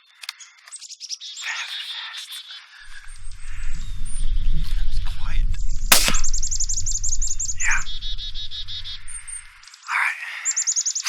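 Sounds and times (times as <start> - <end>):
birds chirping: 0.3 - 11.0
steady low rumble: 2.9 - 9.6
suppressed rifle shot: 5.8 - 9.5.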